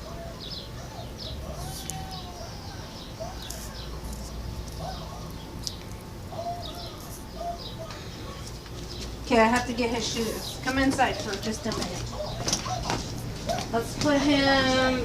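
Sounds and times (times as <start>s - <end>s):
bird cooing: 0.0s - 8.6s, 11.0s - 13.8s
birds chirping: 0.0s - 15.0s
steady low hum: 0.0s - 15.0s.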